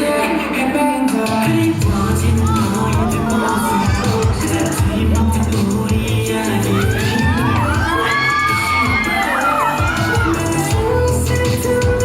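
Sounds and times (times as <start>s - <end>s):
loud stage music: 0.0s - 12.0s
audience shrieking: 6.6s - 10.8s
crowd cheering: 6.6s - 10.8s.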